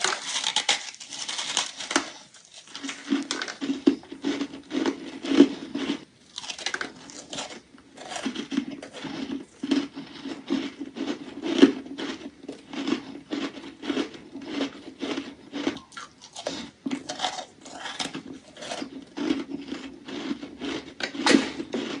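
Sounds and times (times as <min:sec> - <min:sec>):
person chewing crunchy ice: 0:00.0 - 0:22.0.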